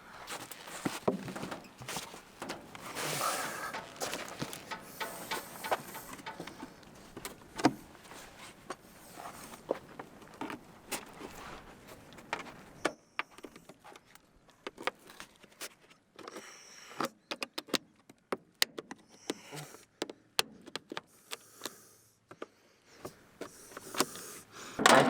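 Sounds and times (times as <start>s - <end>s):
sharp clicks and knocks: 0.8s - 8.8s, 17.0s - 19.1s, 24.8s - 25.0s.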